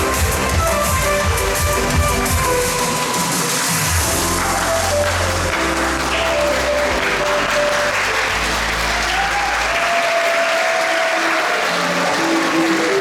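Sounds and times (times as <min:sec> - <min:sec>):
music playing: 0:00.0 - 0:13.0
audience applauding: 0:02.2 - 0:13.0.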